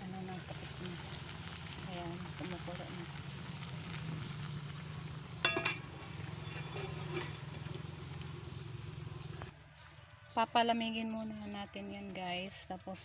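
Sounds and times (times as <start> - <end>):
pot of water boiling: 0.0 - 9.7.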